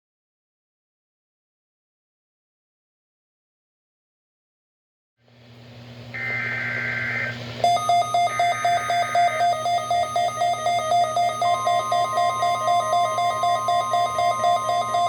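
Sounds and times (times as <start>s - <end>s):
radio receiver hiss and hum: 6.0s - 9.6s
alarm beeps: 6.2s - 15.0s
buzzy screeching data bursts: 6.2s - 15.0s
steady tone: 7.6s - 15.0s.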